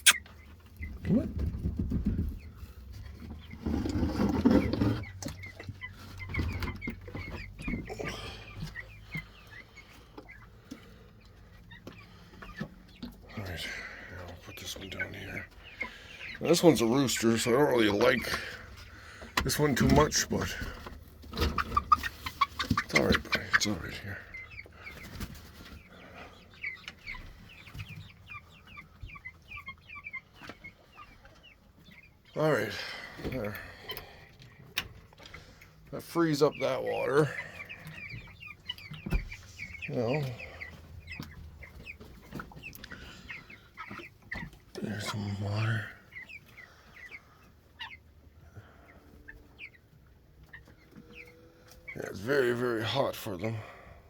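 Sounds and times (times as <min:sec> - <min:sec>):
short high calls: 0:00.0 - 0:00.3
chickens clucking: 0:00.0 - 0:54.0.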